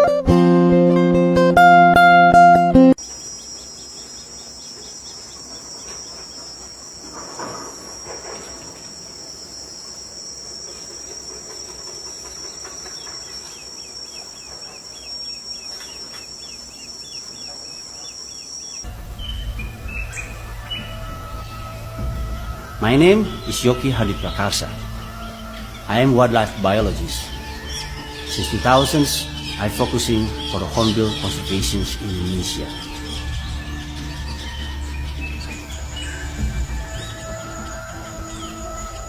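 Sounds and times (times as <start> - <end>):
acoustic guitar music: 0.0 - 3.0, 18.9 - 39.0
insects droning: 2.9 - 39.0
faint bird calls: 3.0 - 39.0.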